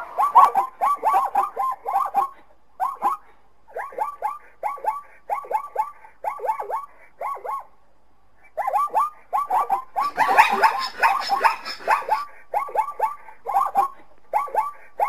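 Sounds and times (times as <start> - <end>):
zebras calling: 9.6 - 12.3.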